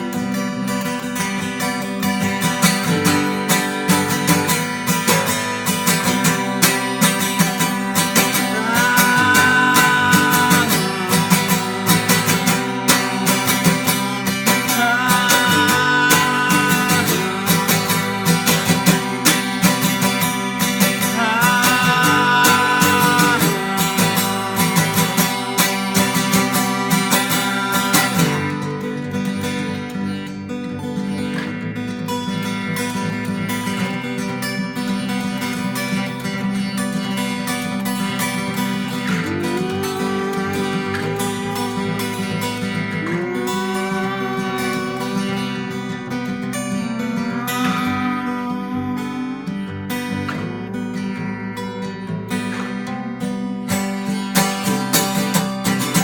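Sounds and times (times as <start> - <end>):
strummed guitar music: 0.0 - 56.0
high held melody line: 0.1 - 29.2, 37.8 - 49.8.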